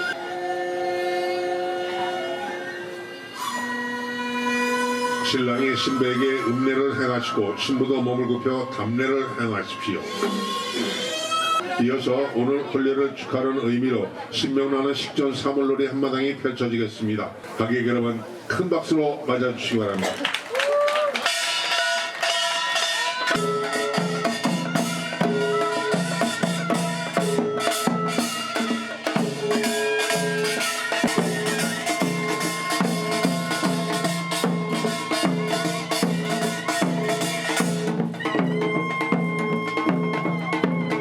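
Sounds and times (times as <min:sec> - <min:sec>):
fast drum strokes: 0:21.2 - 0:41.0.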